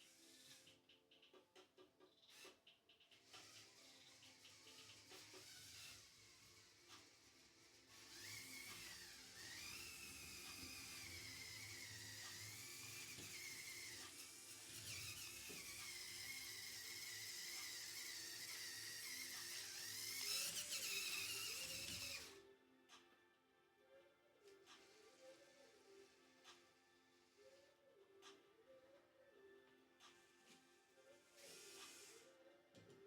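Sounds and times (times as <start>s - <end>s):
small electric motor whining: 0.0s - 0.9s, 2.3s - 22.4s, 30.4s - 32.9s.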